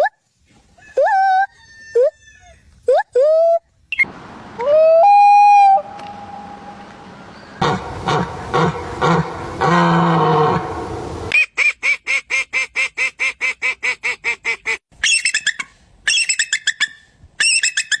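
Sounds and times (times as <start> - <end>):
high squawks: 4.6 - 11.3
low drawn-out animal call: 4.6 - 11.3
rapid quacking calls: 7.6 - 11.3.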